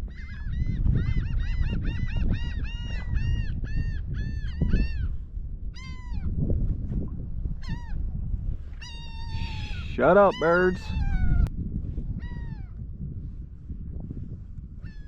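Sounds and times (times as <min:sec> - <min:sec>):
wind rumbling on microphone: 0:00.0 - 0:15.0
birds squawking: 0:08.8 - 0:11.5.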